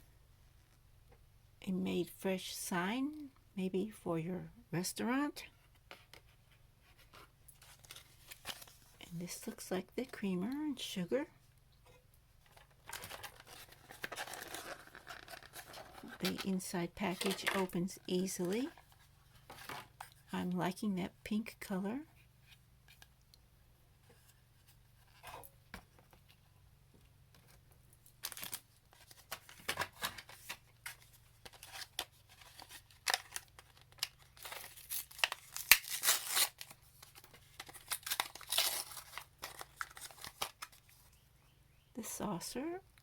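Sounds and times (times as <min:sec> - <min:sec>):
plastic packaging tearing and crinkling: 0:12.8 - 0:16.4, 0:28.0 - 0:40.9.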